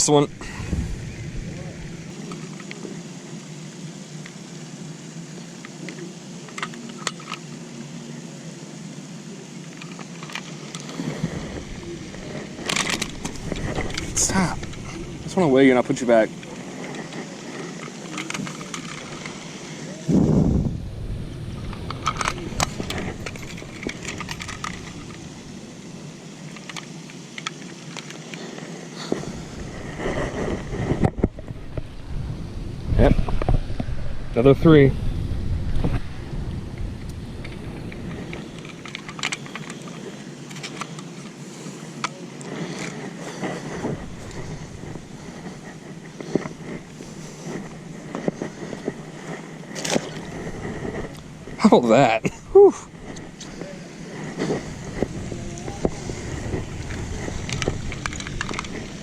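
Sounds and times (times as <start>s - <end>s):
steady background hiss: 0.0s - 59.0s
sharp clicks and light rattles: 5.4s - 7.6s, 9.5s - 19.8s, 21.6s - 31.9s, 36.8s - 52.4s, 53.0s - 59.0s
rustling of fish and tackle: 9.0s - 20.3s, 21.4s - 32.0s, 36.8s - 59.0s.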